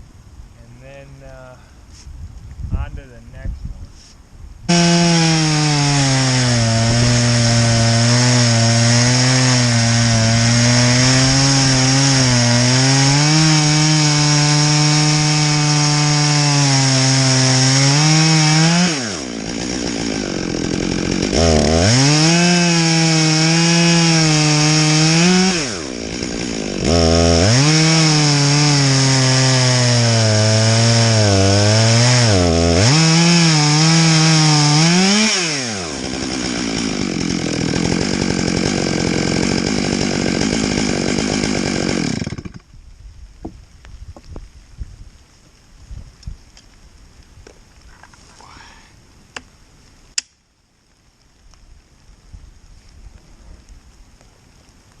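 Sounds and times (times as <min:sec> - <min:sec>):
chainsaw ripping a log: 0:04.7 - 0:42.7.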